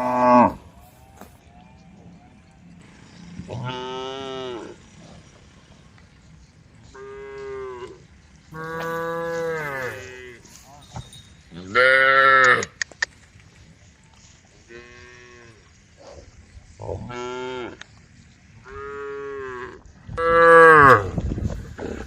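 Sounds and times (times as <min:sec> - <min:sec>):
cows mooing: 0:00.0 - 0:00.8, 0:02.8 - 0:05.8, 0:06.8 - 0:10.7, 0:11.5 - 0:12.8, 0:16.8 - 0:17.9, 0:18.6 - 0:22.0.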